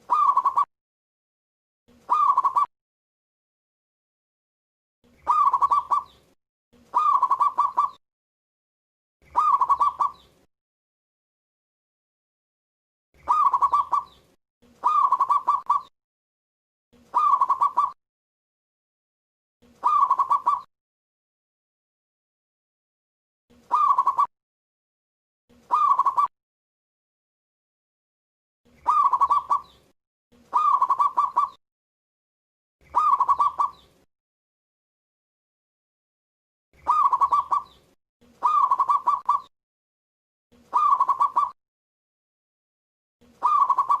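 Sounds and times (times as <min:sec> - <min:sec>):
dove cooing: 0:00.0 - 0:00.7, 0:02.0 - 0:02.7, 0:05.2 - 0:06.2, 0:06.8 - 0:08.0, 0:09.2 - 0:10.2, 0:13.2 - 0:14.2, 0:14.8 - 0:15.9, 0:17.0 - 0:18.0, 0:19.8 - 0:20.7, 0:23.6 - 0:24.3, 0:25.6 - 0:26.3, 0:28.8 - 0:29.7, 0:30.4 - 0:31.6, 0:32.8 - 0:33.8, 0:36.8 - 0:37.8, 0:38.4 - 0:39.5, 0:40.6 - 0:41.6, 0:43.3 - 0:44.0.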